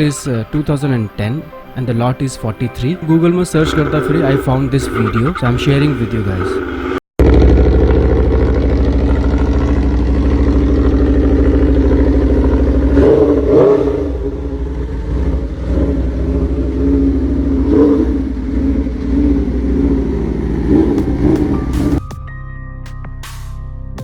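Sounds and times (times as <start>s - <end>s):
motorcycle engine revving: 3.6s - 22.0s.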